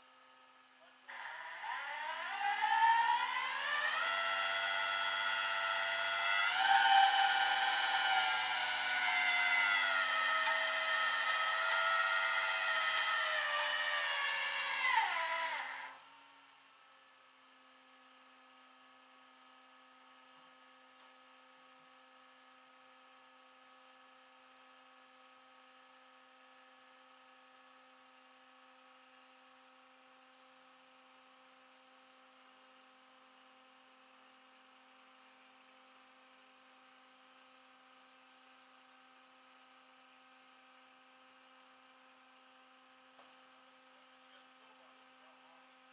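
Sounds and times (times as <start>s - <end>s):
motor whine winding down: 1.1s - 16.3s.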